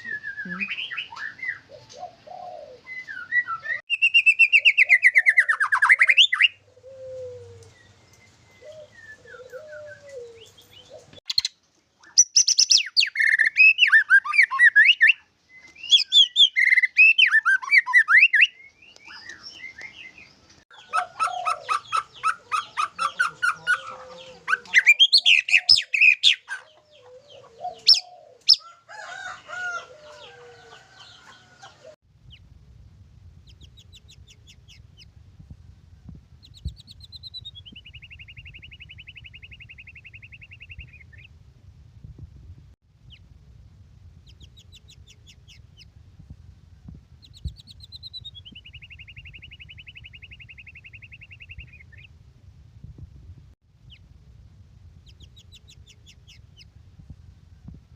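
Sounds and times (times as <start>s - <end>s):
songbird whistling and chattering: 0.0s - 7.6s, 8.6s - 20.1s, 20.7s - 28.6s, 36.4s - 41.3s, 47.2s - 52.1s.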